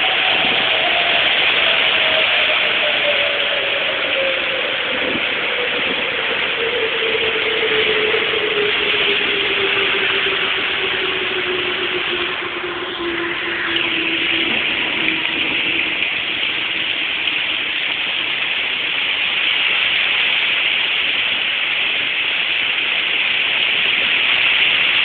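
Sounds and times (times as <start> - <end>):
tone sliding down in pitch: 0.0 - 17.2
rain: 0.0 - 25.0
storm wind: 0.0 - 25.0.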